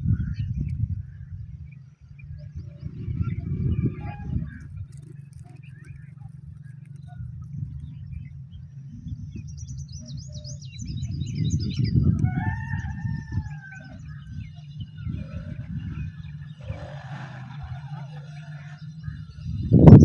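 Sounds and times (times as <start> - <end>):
birds chirping: 0.0 - 20.0
steady low rumble: 0.0 - 20.0.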